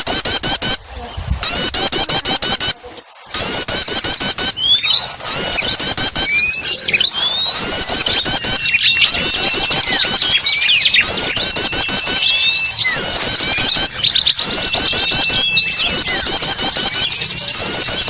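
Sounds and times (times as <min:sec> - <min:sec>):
sharp high bird chirps: 0:03.0 - 0:18.0
rising whistled bird notes: 0:03.7 - 0:18.0.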